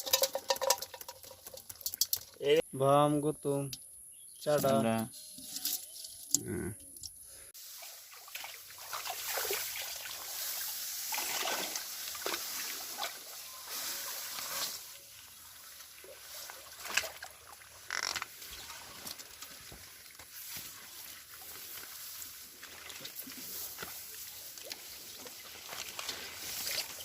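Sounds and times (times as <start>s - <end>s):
water splashing and sloshing: 7.5s - 27.0s.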